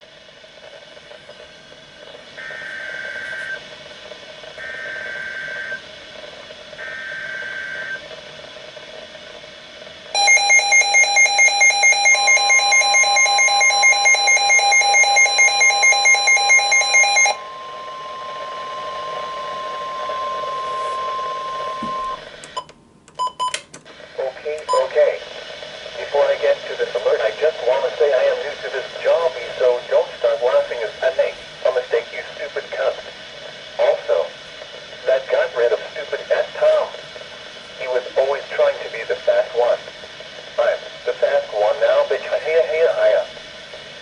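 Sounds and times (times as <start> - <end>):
long warning tone: 2.4 - 3.6, 4.6 - 5.8, 6.8 - 8.0, 10.2 - 23.6
rapid alarm beeps: 4.6 - 5.8, 6.8 - 8.0, 10.2 - 22.2, 24.7 - 24.9.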